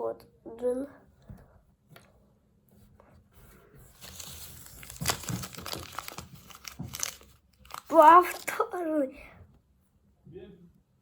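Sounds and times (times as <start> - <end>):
plastic packet crinkling and tearing: 4.0 - 8.7.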